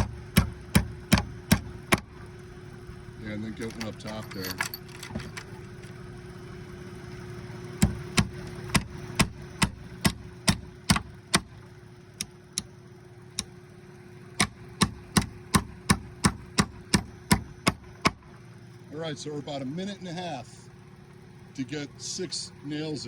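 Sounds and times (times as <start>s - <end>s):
hammer driving nails: 0.0s - 2.1s
steady low hum: 0.0s - 23.0s.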